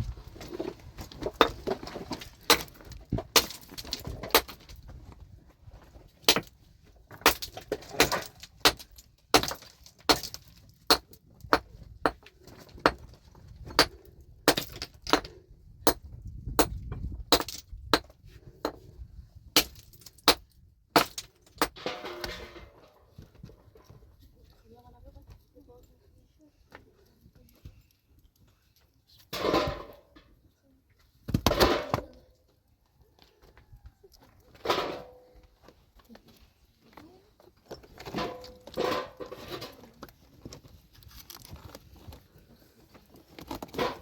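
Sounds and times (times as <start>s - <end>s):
stones clacking together: 0.3s - 4.9s, 6.2s - 18.8s, 19.6s - 22.4s.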